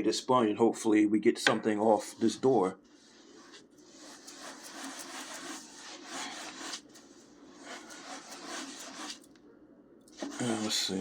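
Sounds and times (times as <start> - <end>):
sponge rubbing on glass: 3.0 - 9.2.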